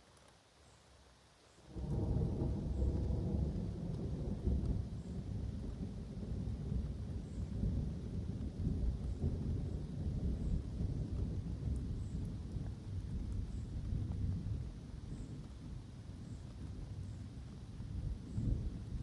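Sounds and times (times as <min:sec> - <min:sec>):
thunder rumbling: 0:01.8 - 0:14.6.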